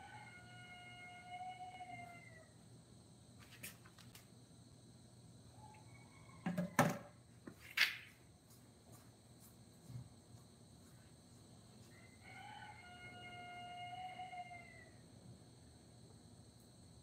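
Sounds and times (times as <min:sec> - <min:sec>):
rooster crowing: 0:00.0 - 0:02.6, 0:05.5 - 0:07.2, 0:11.8 - 0:15.0.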